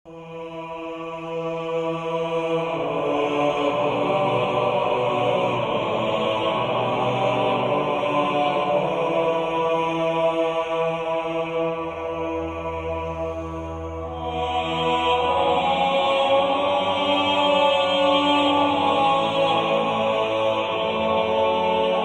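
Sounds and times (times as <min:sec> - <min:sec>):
ambient drone music: 0:00.1 - 0:22.0.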